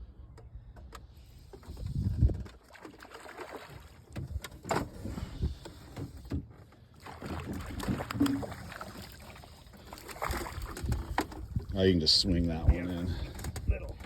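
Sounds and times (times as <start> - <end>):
low rumbling from water and hull: 0.0 - 14.0
knocks and clatter on a boat: 0.2 - 14.0.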